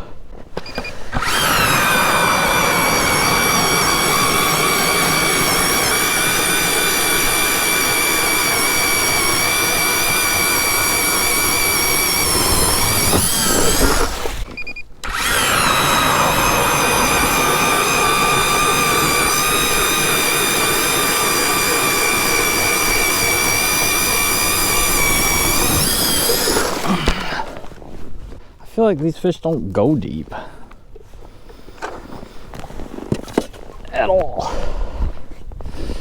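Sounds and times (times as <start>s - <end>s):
ice auger whining: 0.6s - 28.1s.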